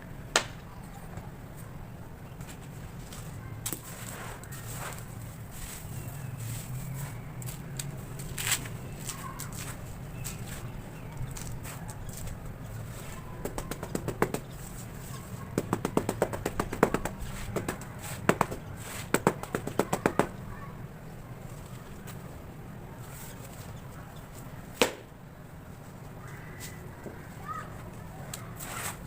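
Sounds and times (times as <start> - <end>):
sharp taps on gritty cement: 13.4 - 14.6, 15.5 - 20.4.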